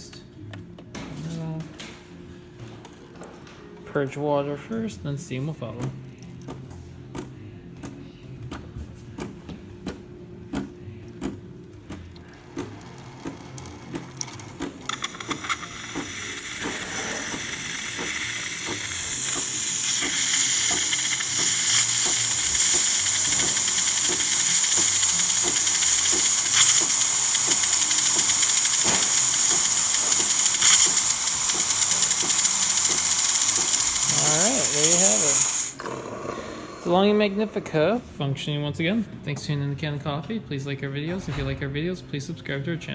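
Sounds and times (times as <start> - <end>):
espresso machine pump humming: 12.4 - 37.3
steam wand hissing: 14.9 - 35.8.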